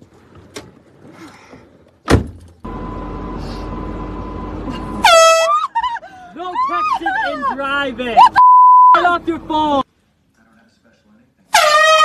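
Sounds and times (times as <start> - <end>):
car engine running rumble: 2.2 - 5.3.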